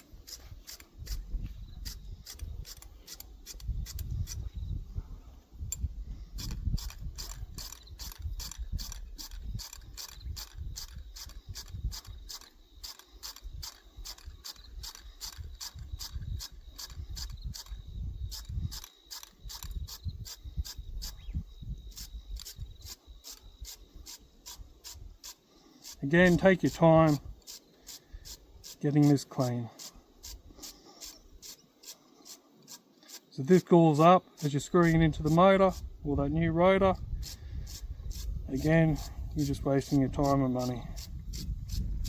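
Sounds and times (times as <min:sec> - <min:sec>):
scraping clicks on metal threads: 0:06.4 - 0:21.2, 0:22.0 - 0:35.8.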